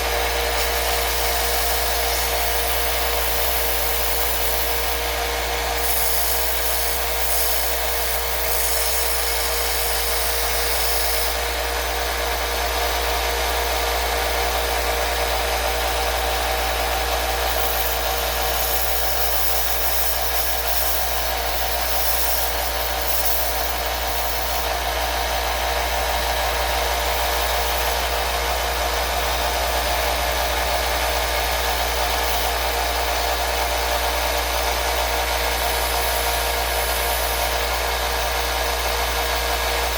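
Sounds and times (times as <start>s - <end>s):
hiss: 5.8s - 11.4s.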